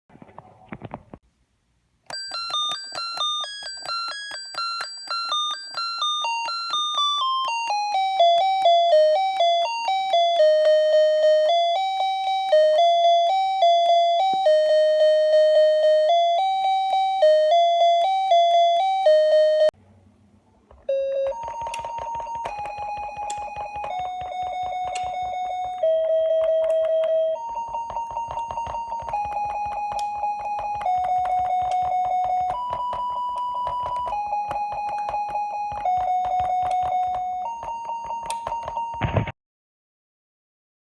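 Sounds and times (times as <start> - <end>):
electronic beeps playing a melody: 2.1 - 19.8, 20.9 - 39.2
rapid key tapping clicks: 20.7 - 39.0.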